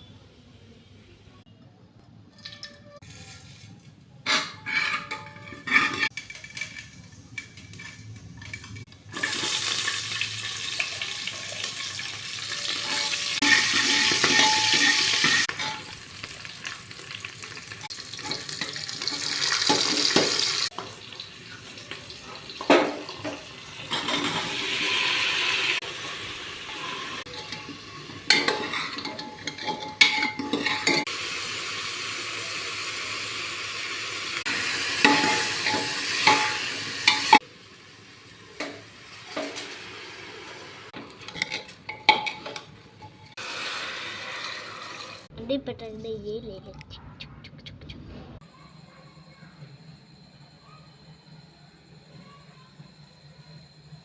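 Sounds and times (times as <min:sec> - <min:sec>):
food sizzling in hot oil: 0:05.6 - 0:45.3.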